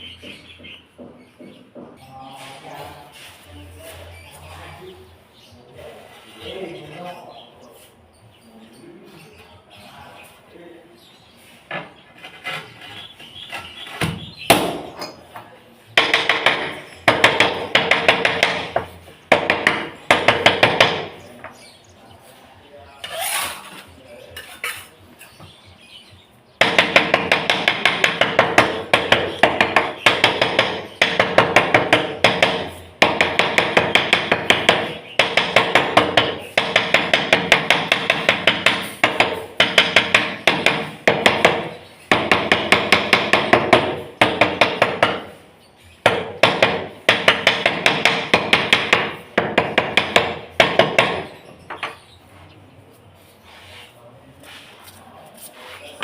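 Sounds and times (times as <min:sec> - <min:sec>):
hammering: 0:00.2 - 0:02.1, 0:11.7 - 0:15.2, 0:16.0 - 0:21.6, 0:26.6 - 0:45.4, 0:46.0 - 0:52.0.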